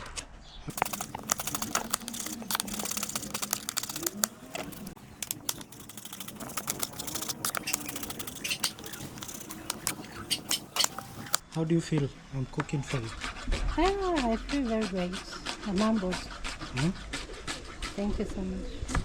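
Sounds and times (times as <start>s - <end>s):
rapid crackling clicks: 0.7s - 11.4s.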